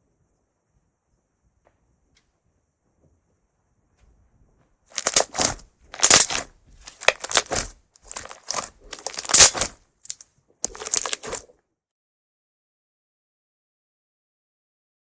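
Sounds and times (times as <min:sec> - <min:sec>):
slime squeezed by hand crackling: 0:05.0 - 0:11.5.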